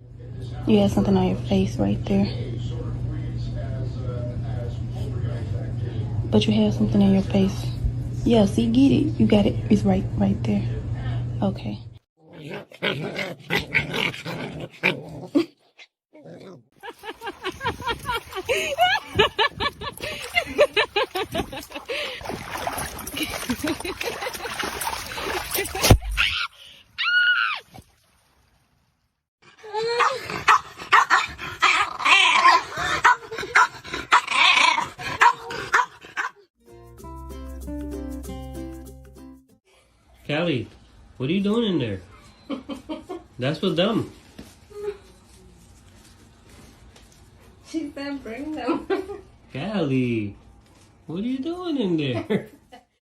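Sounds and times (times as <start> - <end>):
dog barking and yipping: 29.9 - 36.4.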